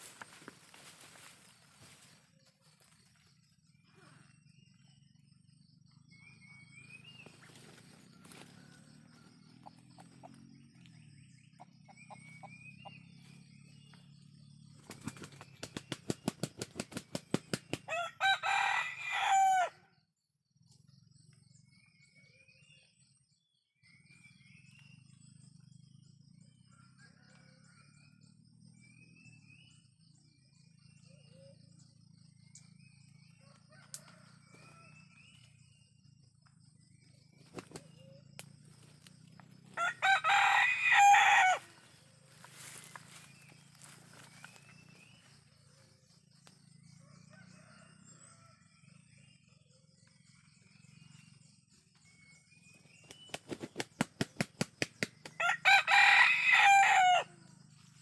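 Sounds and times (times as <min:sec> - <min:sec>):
rooster wings flapping: 0:14.8 - 0:17.9, 0:37.4 - 0:38.0, 0:53.1 - 0:55.4
rooster crowing: 0:17.9 - 0:19.9, 0:26.7 - 0:28.2, 0:33.4 - 0:35.2, 0:39.8 - 0:43.9, 0:46.9 - 0:48.9, 0:55.4 - 0:57.6.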